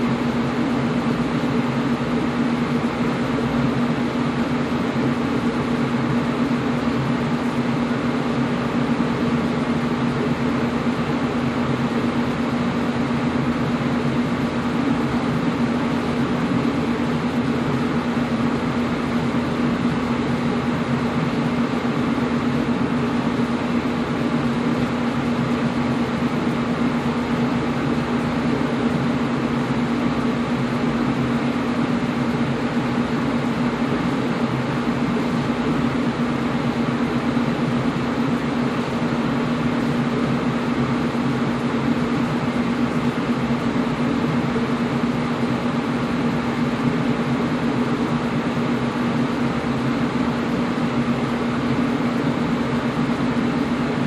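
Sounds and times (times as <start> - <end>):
air conditioner running: 0.0 - 54.0.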